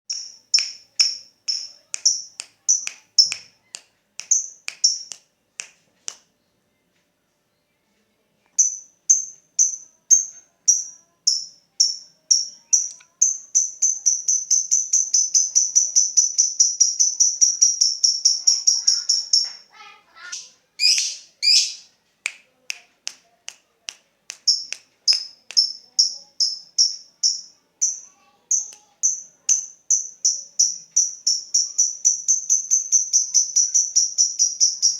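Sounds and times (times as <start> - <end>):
bird sharp high chips: 20.2 - 21.9
lovebird calling: 20.2 - 21.9.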